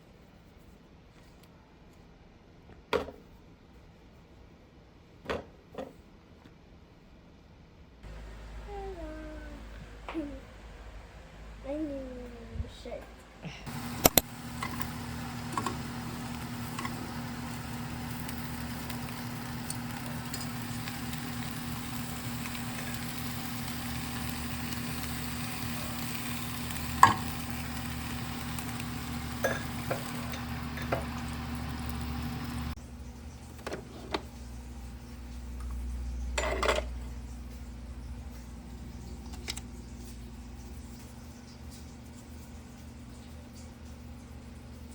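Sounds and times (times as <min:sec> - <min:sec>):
constant hum: 0:08.0 - 0:44.8
food sizzling in a frying pan: 0:13.7 - 0:32.8.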